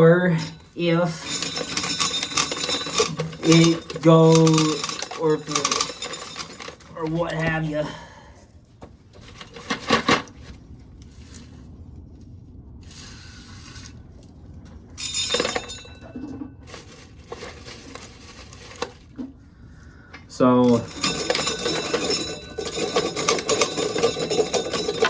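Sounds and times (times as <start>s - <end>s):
hard objects clattering: 0.0s - 7.9s, 9.2s - 10.6s, 15.0s - 19.3s, 20.6s - 25.0s
metallic clinks: 0.4s - 6.9s, 15.0s - 16.4s, 20.6s - 25.0s.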